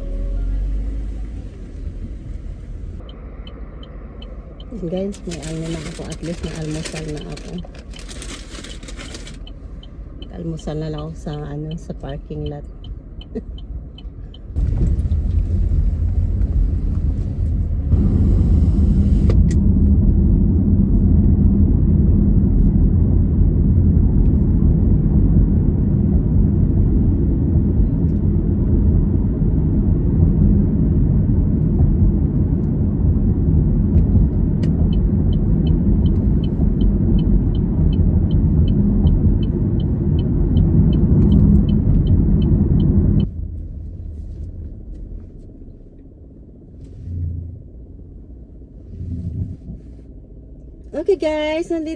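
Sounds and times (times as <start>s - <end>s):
turn signal ticking: 0.0s - 17.5s, 34.0s - 43.5s
road and engine rumble in car: 0.0s - 51.9s.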